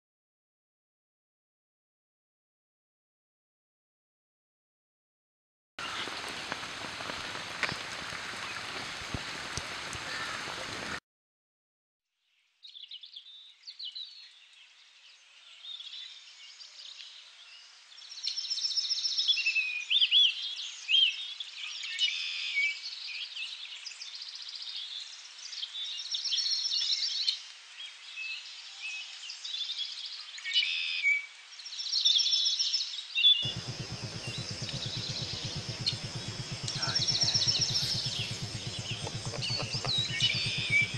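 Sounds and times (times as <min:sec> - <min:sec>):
birds chirping and whistling: 0:33.4 - 0:40.9
low steady noise: 0:33.4 - 0:40.9
steady hiss: 0:33.4 - 0:40.9.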